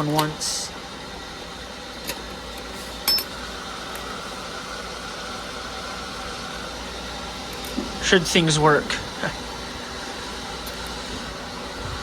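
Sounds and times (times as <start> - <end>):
air conditioning hum: 0.0 - 12.0
metallic clink with ring: 3.0 - 3.3.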